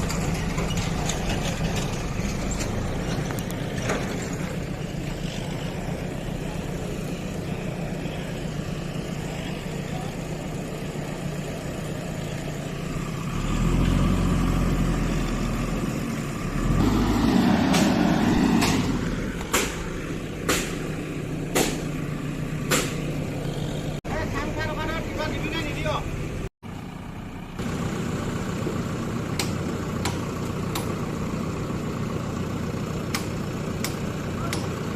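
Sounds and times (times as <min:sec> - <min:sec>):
diesel engine revving: 0:00.0 - 0:34.9
sharp knocks: 0:17.7 - 0:20.9, 0:21.5 - 0:21.9, 0:22.7 - 0:23.0.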